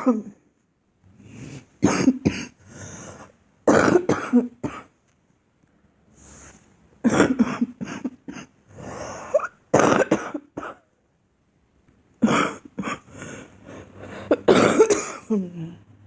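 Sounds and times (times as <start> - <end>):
girl coughing: 0.0 - 0.4, 1.8 - 2.6, 3.7 - 4.9, 7.0 - 8.5, 9.3 - 10.9, 12.2 - 13.1, 14.3 - 15.5.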